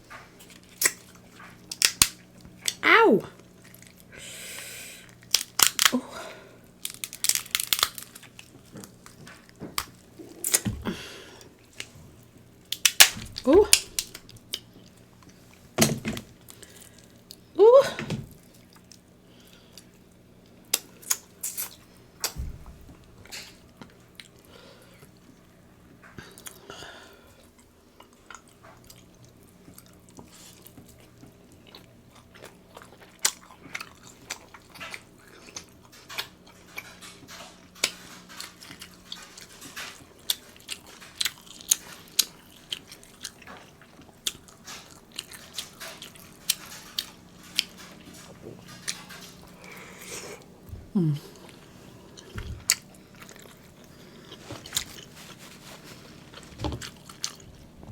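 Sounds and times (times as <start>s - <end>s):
chewing and crunching: 0.1s - 2.8s, 3.4s - 4.1s, 5.0s - 17.5s, 18.3s - 22.4s, 23.0s - 57.9s
sharp clicks and cracks: 1.7s - 2.8s, 6.8s - 8.2s.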